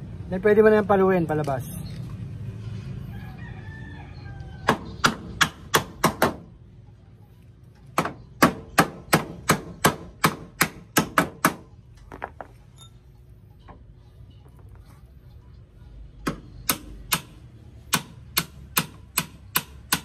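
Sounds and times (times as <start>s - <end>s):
hammer striking hinge pin: 16.2s - 20.0s.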